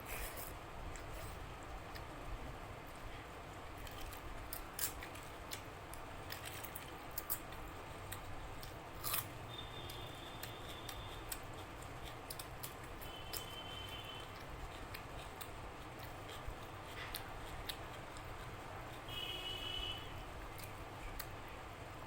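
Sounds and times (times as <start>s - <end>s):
low room hum: 0.0s - 22.0s
person chewing: 3.8s - 19.2s.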